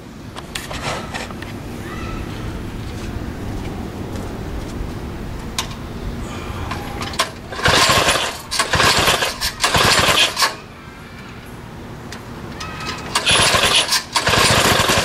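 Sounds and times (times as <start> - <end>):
engine being pull-started: 6.7 - 10.6, 12.7 - 15.0.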